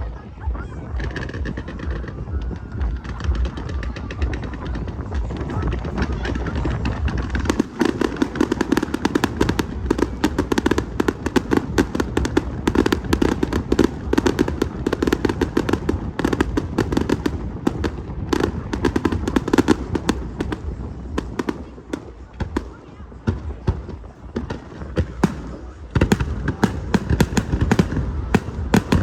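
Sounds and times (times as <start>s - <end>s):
fireworks bangs and crackles: 0.0s - 29.0s.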